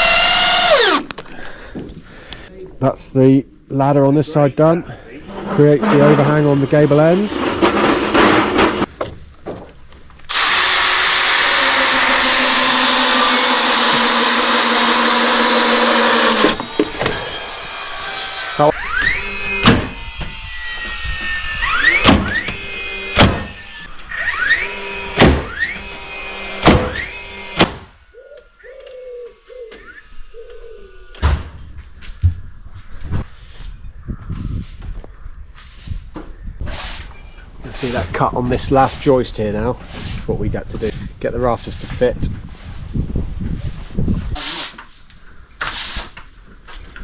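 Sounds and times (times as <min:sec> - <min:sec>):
power tool running: 0:00.0 - 0:01.2, 0:10.3 - 0:27.9
hammer striking timber: 0:25.2 - 0:25.5, 0:26.6 - 0:27.0.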